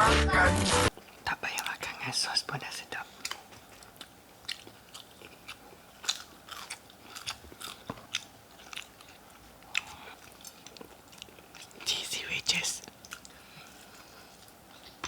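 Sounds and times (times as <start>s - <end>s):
crunching fried chicken: 3.2s - 12.0s.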